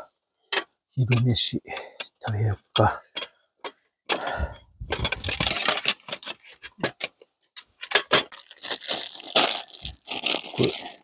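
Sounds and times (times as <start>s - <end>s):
small hard items clicking: 0.5s - 11.0s
packaging rustle: 5.0s - 6.9s, 8.0s - 11.0s.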